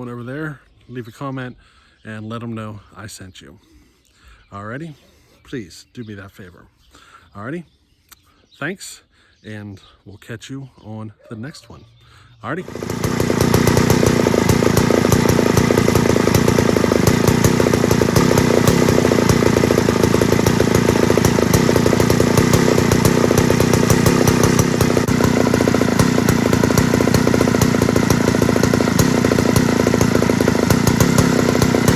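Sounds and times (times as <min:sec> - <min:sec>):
chainsaw engine running: 0:12.6 - 0:31.9.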